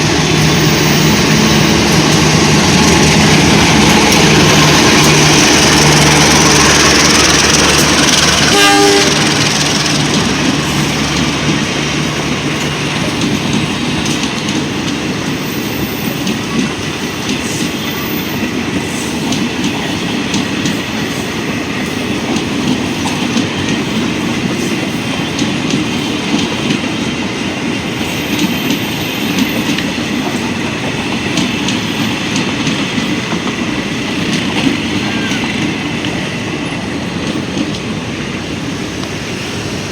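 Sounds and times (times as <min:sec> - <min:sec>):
diesel locomotive engine humming: 0:00.0 - 0:39.9
train wheels clacking on rails: 0:00.0 - 0:39.9
train horn: 0:08.3 - 0:10.0, 0:34.9 - 0:35.7.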